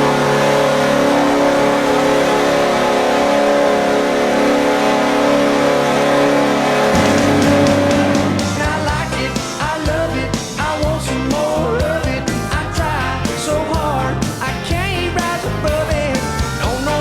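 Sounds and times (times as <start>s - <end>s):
arena goal horn blaring: 0.1s - 8.9s
music: 6.7s - 17.0s.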